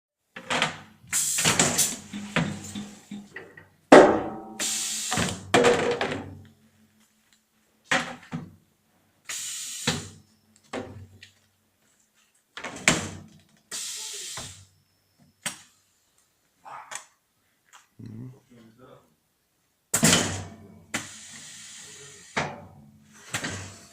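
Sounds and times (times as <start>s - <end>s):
compressed air hiss: 1.1s - 3.2s, 4.6s - 5.4s, 9.2s - 10.2s, 13.7s - 14.7s, 20.9s - 22.5s
pneumatic knocks: 1.1s - 3.4s.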